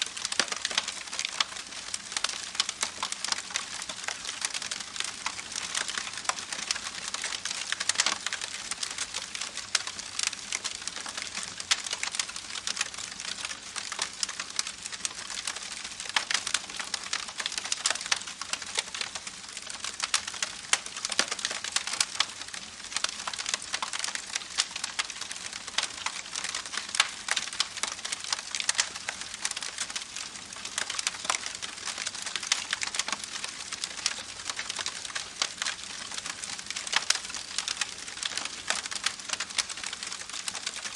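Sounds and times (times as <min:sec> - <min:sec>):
campfire crackling: 0:00.1 - 0:22.7, 0:23.3 - 0:40.8.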